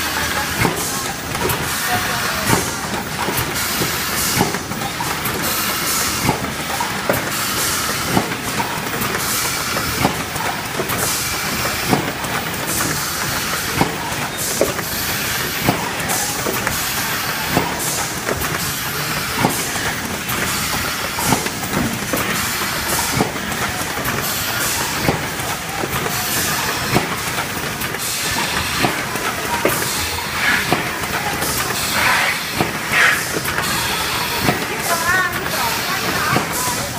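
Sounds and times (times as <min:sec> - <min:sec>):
machine clattering: 0:00.0 - 0:36.9
machine hiss: 0:29.7 - 0:34.5.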